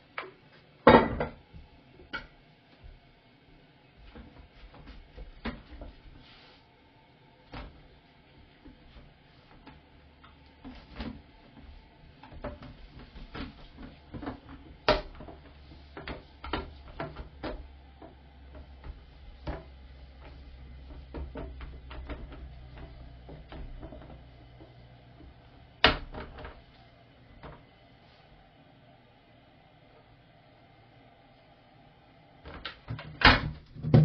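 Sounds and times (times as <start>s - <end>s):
low steady hum: 0.0s - 34.0s.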